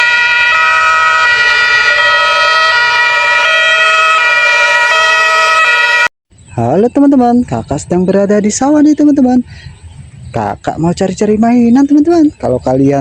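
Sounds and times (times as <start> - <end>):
siren-like multi-tone sound: 0.0 - 6.1.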